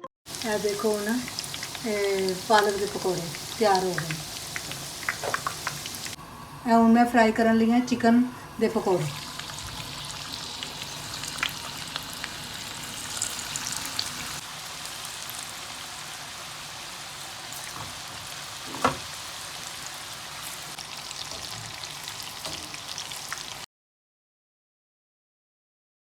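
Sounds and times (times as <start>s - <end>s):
food deep-frying in hot oil: 0.3s - 6.2s, 9.0s - 23.7s.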